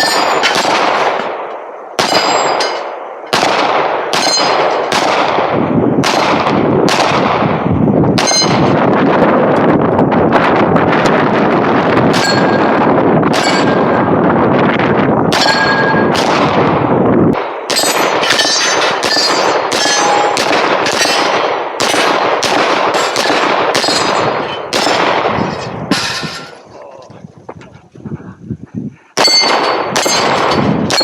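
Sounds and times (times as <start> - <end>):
steel targets ringing: 0.0 - 0.6, 2.0 - 3.0, 4.1 - 4.9, 8.2 - 8.8, 12.2 - 12.8, 13.4 - 13.9, 15.4 - 16.2, 17.7 - 21.3, 22.9 - 26.6, 29.2 - 31.0
rapid gunfire: 0.0 - 1.4, 2.0 - 2.6, 3.3 - 9.5, 15.3 - 25.4, 29.2 - 31.0.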